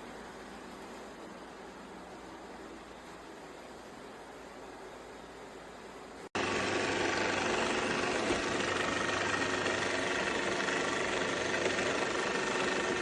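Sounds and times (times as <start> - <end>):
motor humming and whining: 6.4 - 13.0.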